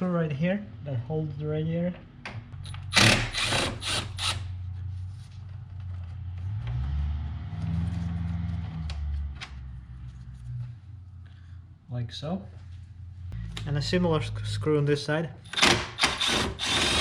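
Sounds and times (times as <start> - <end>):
low steady hum: 9.3 - 15.5.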